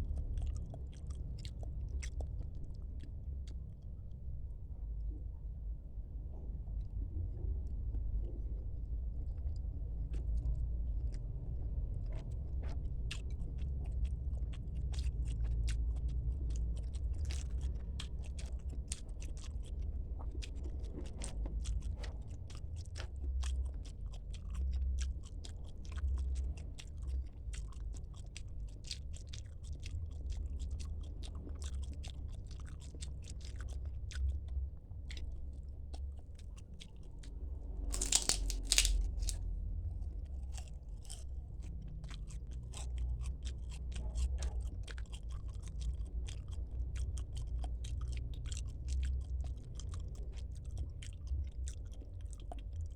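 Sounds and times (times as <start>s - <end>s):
chewing and crunching food: 0.0s - 52.9s
wet mouth clicks: 37.9s - 39.4s.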